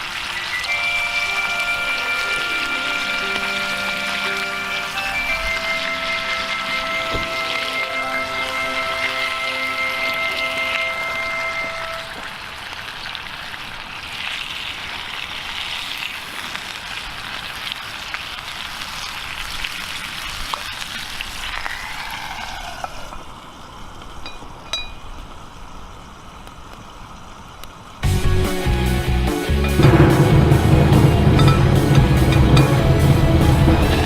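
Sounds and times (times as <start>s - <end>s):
meat sizzling in a skillet: 0.0s - 7.8s, 11.3s - 23.1s.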